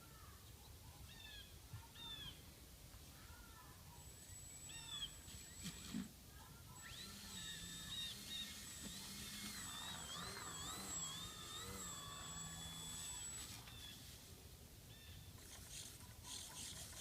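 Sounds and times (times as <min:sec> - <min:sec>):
model plane motor whine: 0:04.0 - 0:06.1, 0:06.8 - 0:14.2.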